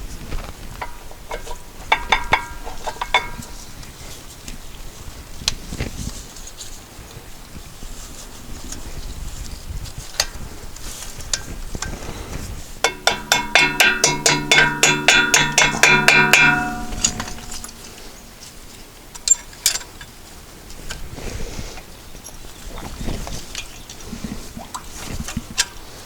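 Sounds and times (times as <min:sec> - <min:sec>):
ringing metal-on-metal strikes: 0:01.9 - 0:03.6, 0:12.9 - 0:18.4.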